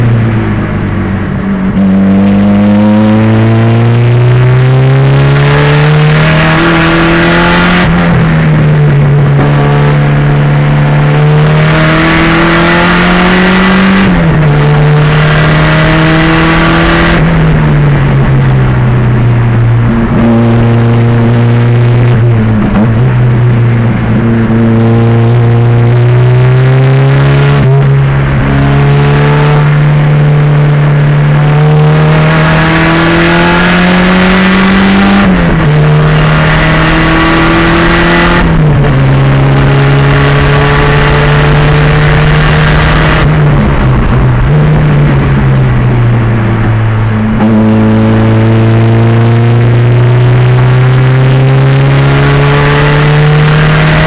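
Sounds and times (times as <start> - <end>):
race car engine at full throttle: 0.0 - 54.0.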